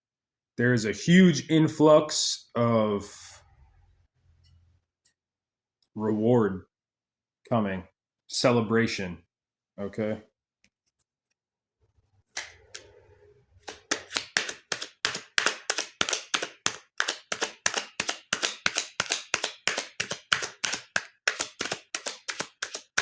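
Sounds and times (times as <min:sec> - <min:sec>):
cards being shuffled: 0:12.4 - 0:12.9, 0:13.6 - 0:23.0.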